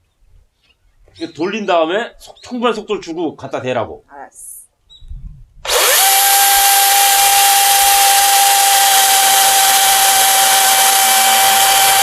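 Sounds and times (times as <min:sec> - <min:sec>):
electric chainsaw whine: 0:05.6 - 0:12.0.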